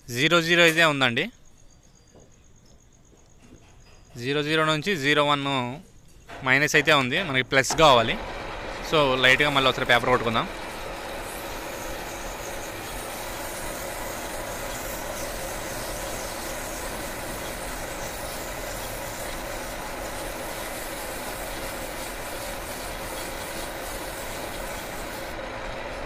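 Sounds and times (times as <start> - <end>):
emery paper rubbing in lathe: 7.7 - 26.0.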